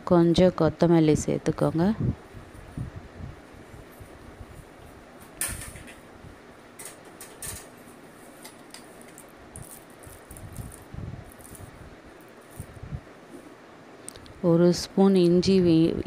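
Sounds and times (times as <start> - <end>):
rustling of hands and utensils: 3.5 - 14.4.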